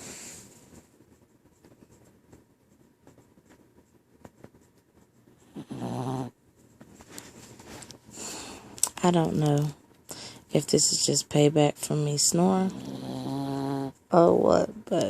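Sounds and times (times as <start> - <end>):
dog snoring: 5.4 - 6.4, 12.6 - 14.0
dog breathing: 8.1 - 8.8.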